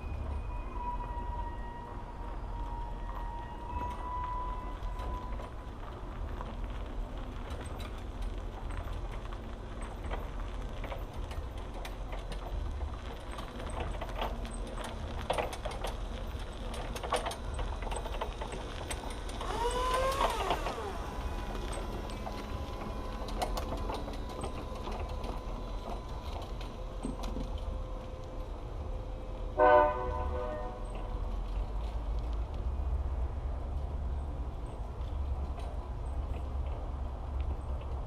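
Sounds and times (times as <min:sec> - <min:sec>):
light clicks and ticks: 0:04.8 - 0:20.8.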